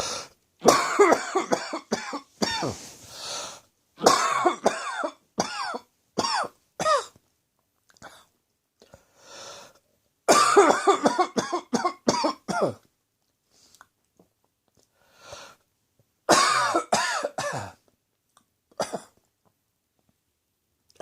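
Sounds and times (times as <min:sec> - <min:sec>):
breath in: 0:00.0 - 0:00.4, 0:02.6 - 0:03.7, 0:08.8 - 0:09.8, 0:14.9 - 0:15.6
person coughing: 0:00.6 - 0:02.9, 0:04.0 - 0:07.2, 0:10.3 - 0:12.8, 0:16.3 - 0:17.8.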